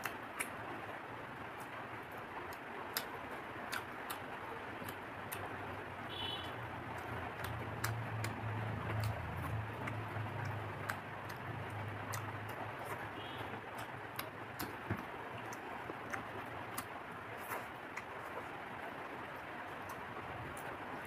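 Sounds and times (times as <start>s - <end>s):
chewing with mouth clicks: 1.6s - 5.6s, 6.8s - 18.5s.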